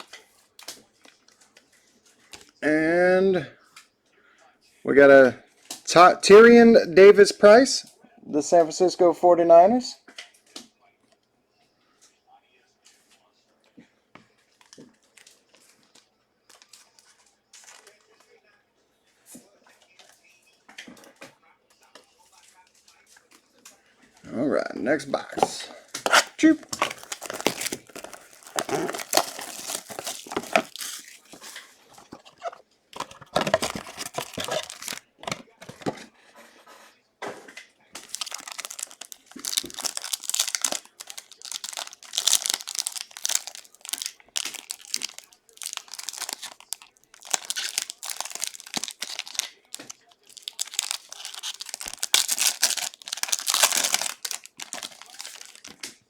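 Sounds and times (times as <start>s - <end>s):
plastic wrap crinkling and tearing: 0.0s - 1.2s, 26.0s - 35.9s, 38.0s - 56.0s.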